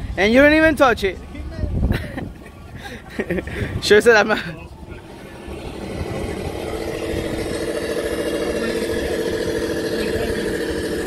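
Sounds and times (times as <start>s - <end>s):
electric motor and gearbox whining: 5.0s - 11.0s.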